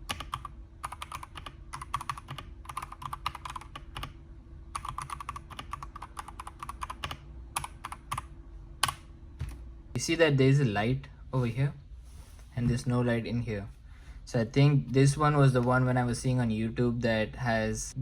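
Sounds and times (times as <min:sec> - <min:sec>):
mechanical keyboard typing: 0:00.0 - 0:04.2, 0:04.8 - 0:09.6.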